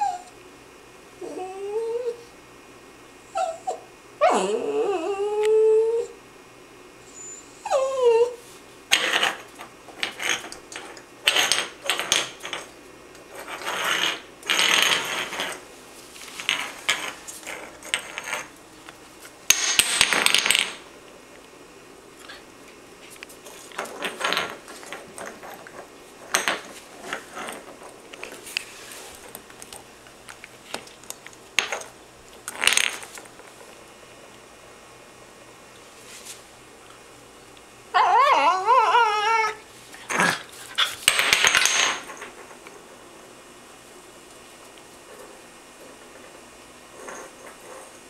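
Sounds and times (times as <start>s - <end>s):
puppy making raspy noises: 38.0s - 41.0s.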